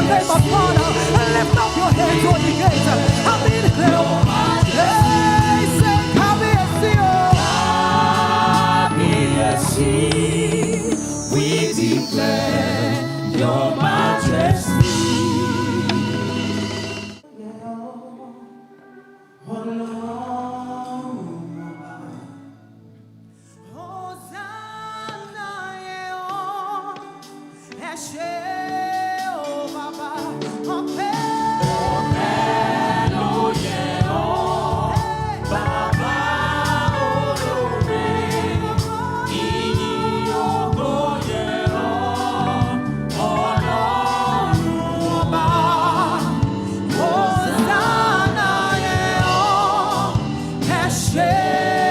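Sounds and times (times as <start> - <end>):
band with drums and bass: 0.0 - 17.2, 29.2 - 51.9
backing choir singing: 0.0 - 18.7, 19.4 - 22.2, 30.9 - 51.9
lead singer: 0.0 - 22.7, 23.4 - 51.9.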